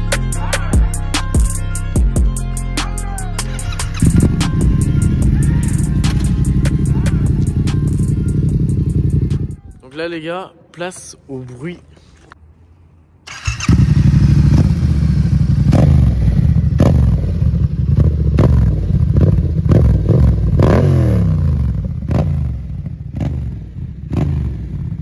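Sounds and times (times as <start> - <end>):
motorcycle engine idling: 3.1 - 9.8, 13.3 - 25.0
motorcycle throttle blips: 3.8 - 9.7.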